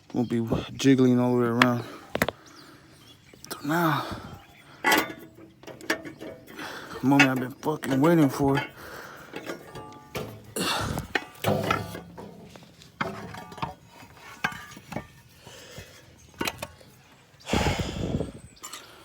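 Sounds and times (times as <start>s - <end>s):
metal clanking and scraping: 4.7s - 17.1s.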